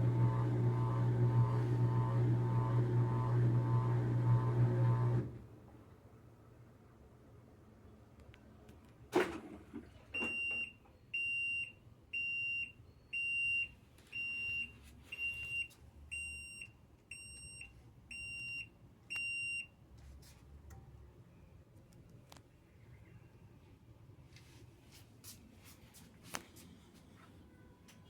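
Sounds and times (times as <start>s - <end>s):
washing machine high beeps: 10.2s - 19.8s.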